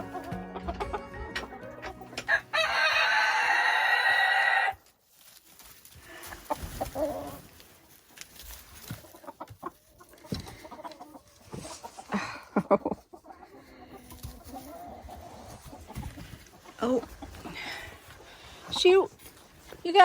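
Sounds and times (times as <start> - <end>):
hens clucking: 0.0 - 4.9, 6.0 - 20.0
rooster crowing: 2.3 - 4.8.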